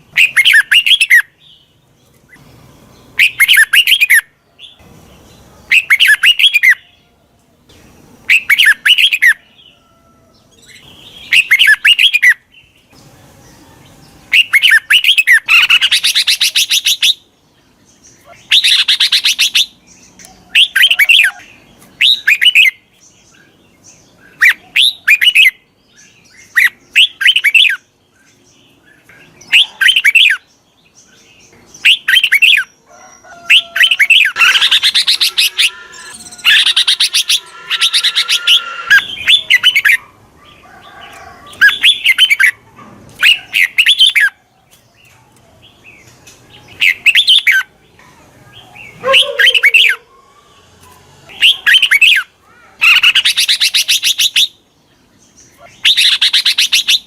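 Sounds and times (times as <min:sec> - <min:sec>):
bulbul chattering calls: 0:31.8 - 0:42.6.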